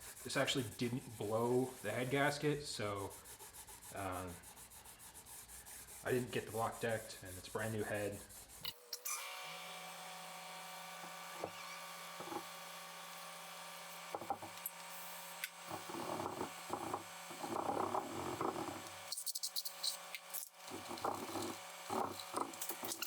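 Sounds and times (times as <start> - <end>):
scrub pad scrubbing metal: 0.0 - 8.7, 20.6 - 23.0.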